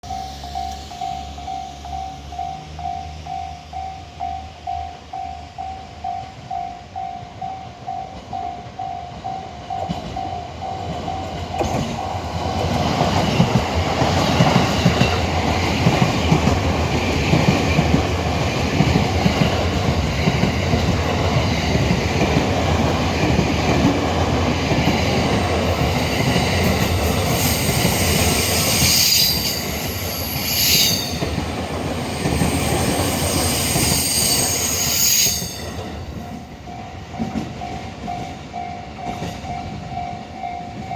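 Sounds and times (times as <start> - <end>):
high wheel squeal: 0.0 - 4.0, 25.2 - 36.3
level crossing warning bell: 0.0 - 12.1, 24.8 - 40.9
train wheels rumbling on rails: 0.0 - 40.9.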